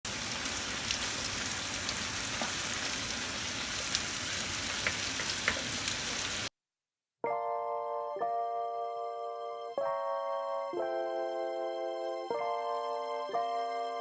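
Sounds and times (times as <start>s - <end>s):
food sizzling in oil: 0.1s - 6.5s
oil popping and crackling: 0.1s - 6.5s.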